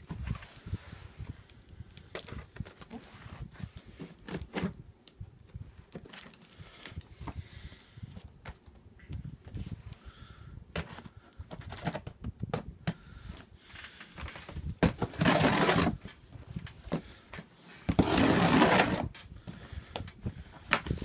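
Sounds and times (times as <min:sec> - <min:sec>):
knocks and scrapes on cardboard: 0:14.4 - 0:16.1, 0:17.8 - 0:19.2
cardboard box tearing: 0:14.9 - 0:16.0, 0:17.9 - 0:19.1.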